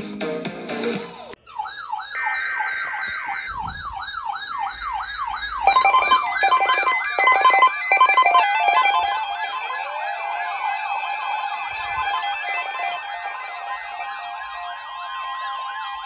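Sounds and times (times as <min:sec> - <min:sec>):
music: 0:00.0 - 0:01.4
electronic siren yelping: 0:01.4 - 0:16.0.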